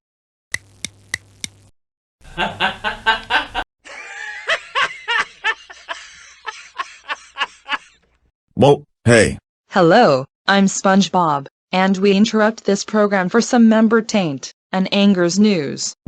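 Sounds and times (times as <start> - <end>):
person laughing: 2.3 - 8.0.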